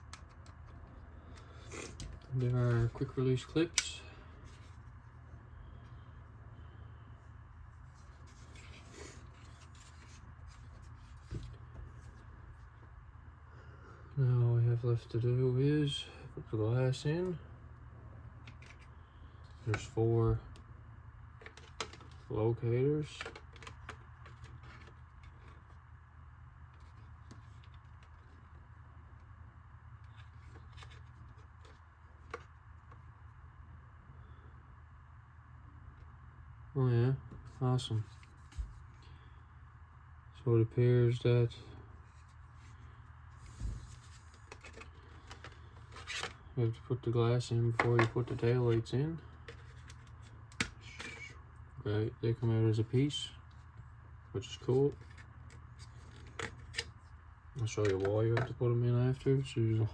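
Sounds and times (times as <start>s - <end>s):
low steady hum: 0.0s - 59.9s
handling plastic parts: 18.3s - 20.0s, 21.3s - 22.3s, 23.0s - 25.8s, 30.0s - 33.1s, 42.0s - 46.5s, 47.6s - 51.7s, 54.4s - 59.3s.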